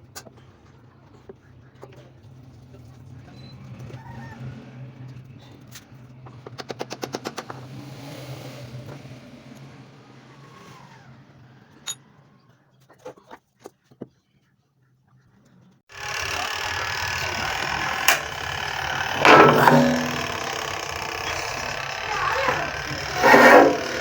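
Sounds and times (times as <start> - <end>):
loud running machine: 15.9 - 24.0
washing machine motor humming: 15.9 - 24.0.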